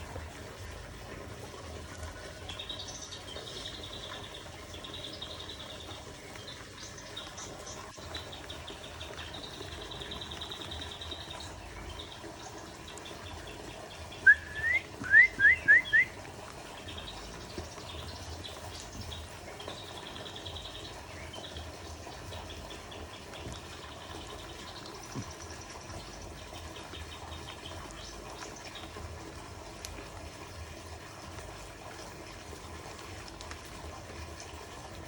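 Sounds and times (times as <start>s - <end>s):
songbird upward-sliding whistles: 14.2s - 16.2s.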